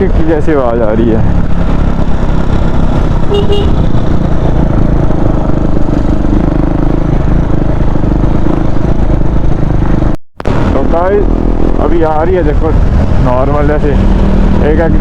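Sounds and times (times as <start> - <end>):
motorcycle engine running: 0.0 - 15.0
short horn toot: 3.3 - 3.8.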